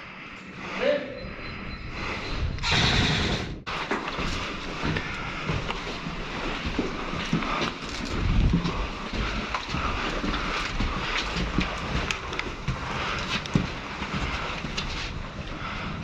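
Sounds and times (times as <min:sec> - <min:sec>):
wind noise on microphone: 0:01.5 - 0:03.7, 0:08.0 - 0:08.9.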